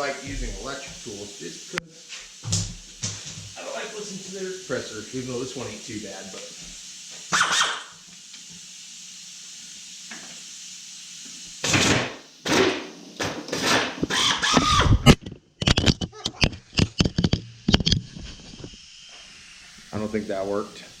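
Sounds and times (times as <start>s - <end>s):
steady low hum: 0.0s - 7.2s
pneumatic impact wrench hammering: 6.6s - 8.1s, 11.6s - 19.2s.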